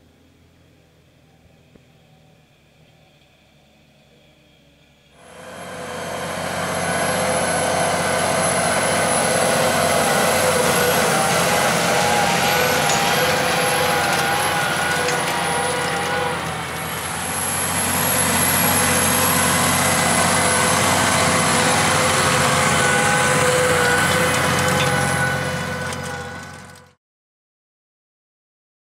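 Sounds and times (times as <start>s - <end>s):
steady whine: 0.0s - 26.9s
tractor diesel engine under load: 5.2s - 27.0s.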